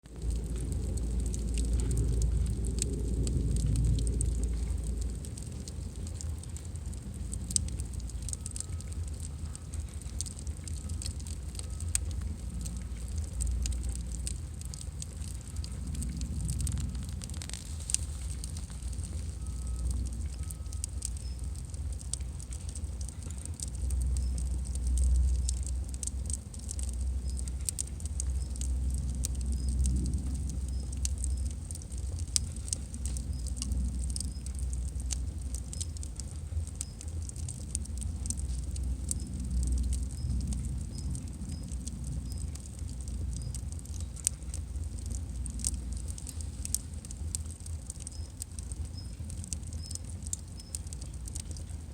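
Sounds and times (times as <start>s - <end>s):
firewood crackling and popping: 0.0s - 51.9s
low rumble of fire: 0.0s - 51.9s.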